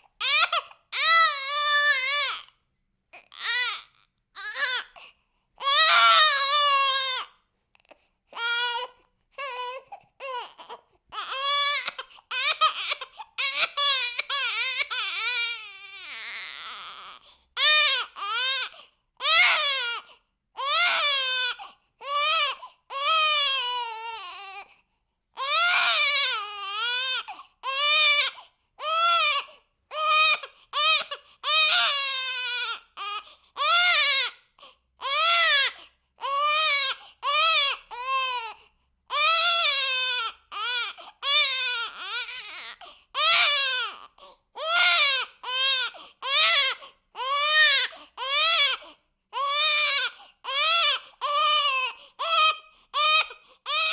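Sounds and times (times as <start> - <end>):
infant crying: 0.0 - 53.9
infant gasping for breath: 17.2 - 17.6, 18.7 - 19.0, 30.4 - 31.4, 33.2 - 33.6, 34.5 - 34.9, 41.0 - 41.2, 42.8 - 43.2, 44.1 - 44.6, 45.9 - 46.2, 46.8 - 47.1, 47.9 - 48.2, 48.8 - 49.1, 50.1 - 50.4, 51.9 - 53.7.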